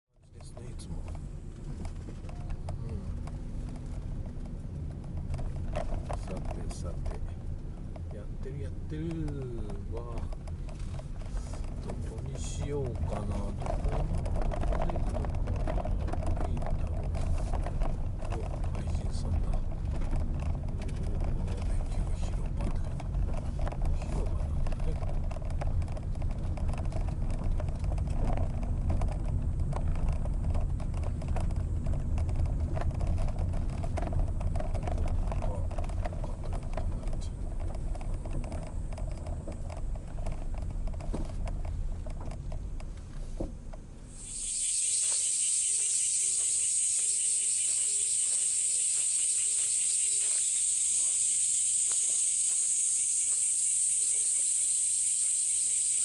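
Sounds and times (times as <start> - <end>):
insects buzzing: 44.2 - 56.0.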